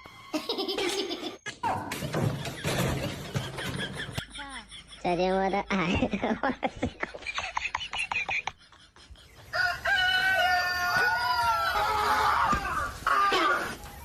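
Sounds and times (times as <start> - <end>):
rooster crowing: 9.5 - 13.3.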